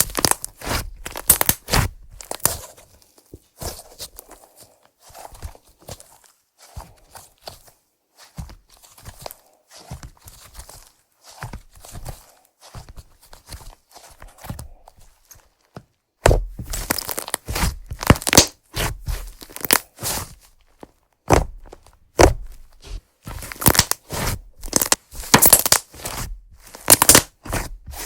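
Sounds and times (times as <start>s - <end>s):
crackling crunching pops: 0.0s - 2.6s, 16.7s - 17.4s, 18.0s - 18.6s, 19.4s - 19.9s, 23.4s - 24.0s, 24.6s - 26.0s, 26.7s - 27.3s
slime squished by hand: 0.0s - 2.8s, 16.3s - 20.3s, 22.1s - 28.0s.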